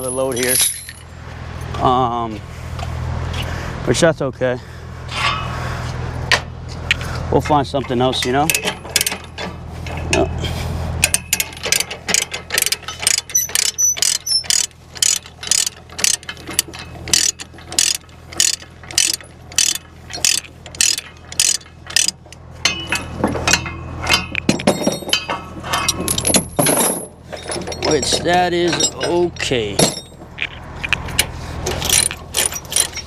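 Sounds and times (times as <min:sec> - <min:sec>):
metal clinks: 0:00.0 - 0:01.1, 0:11.0 - 0:33.0
steady low hum: 0:00.0 - 0:33.0
ratchet clicking: 0:11.0 - 0:22.2.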